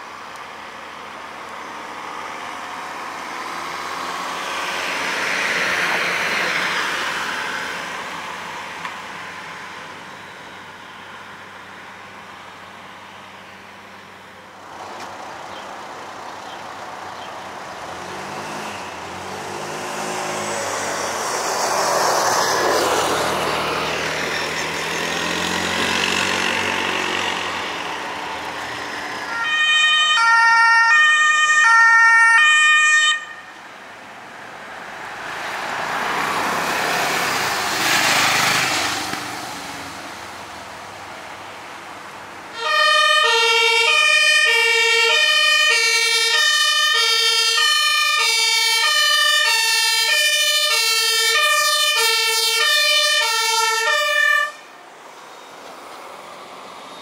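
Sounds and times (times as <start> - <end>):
vehicle engine and road noise: 0.0 - 57.0
two-tone siren: 29.3 - 33.6, 42.6 - 54.7.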